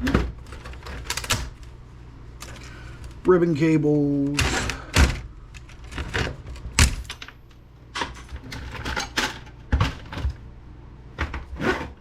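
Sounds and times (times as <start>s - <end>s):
small laptop parts and tools clattering: 8.0s - 9.9s.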